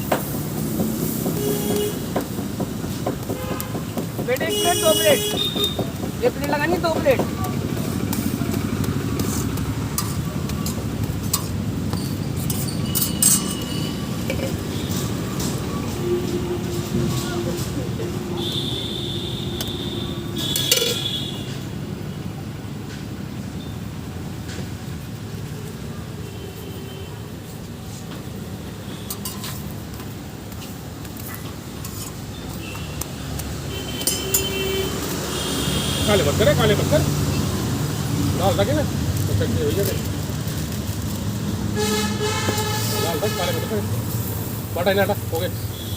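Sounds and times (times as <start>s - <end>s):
street traffic rumble: 0.0s - 45.9s
utensils and plates clinking: 8.2s - 15.6s, 20.5s - 21.1s.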